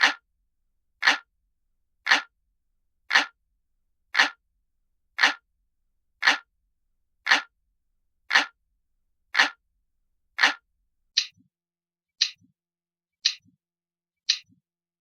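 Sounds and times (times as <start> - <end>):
sharp high clicks: 0.0 - 0.2, 1.0 - 1.3, 2.0 - 2.3, 3.1 - 3.4, 4.1 - 4.4, 5.2 - 5.4, 6.2 - 6.5, 7.2 - 7.5, 8.3 - 8.6, 9.3 - 9.6, 10.4 - 10.6, 13.2 - 13.4
clock ticking: 0.0 - 0.3, 1.0 - 1.3, 2.0 - 2.3, 3.0 - 3.4, 4.1 - 4.4, 5.2 - 5.4, 6.2 - 6.5, 7.2 - 7.5, 8.3 - 8.6, 9.3 - 9.6, 10.4 - 10.6, 11.2 - 11.4, 12.2 - 12.5, 13.2 - 13.6, 14.3 - 14.6.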